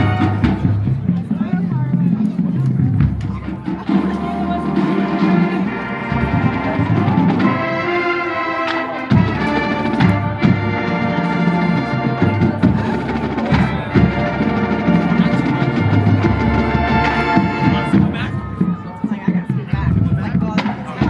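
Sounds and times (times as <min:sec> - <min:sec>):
brass sustained chords: 0:00.0 - 0:01.0, 0:03.8 - 0:18.9
drumline percussion: 0:00.0 - 0:21.0.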